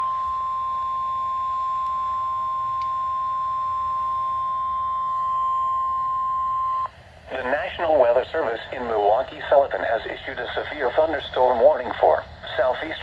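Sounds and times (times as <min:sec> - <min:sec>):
steady alarm tone: 0:00.0 - 0:07.0.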